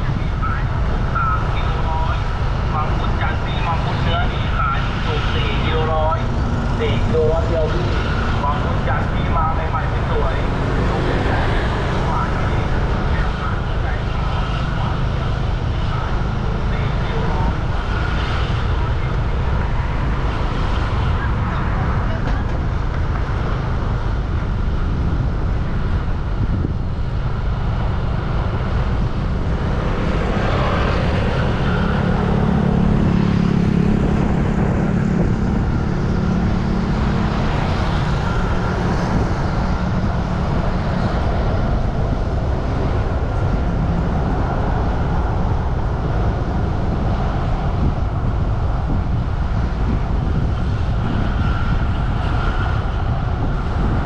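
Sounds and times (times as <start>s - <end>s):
vehicle engine passing: 0.0s - 24.2s, 26.7s - 48.2s
road traffic rumble: 0.0s - 54.0s.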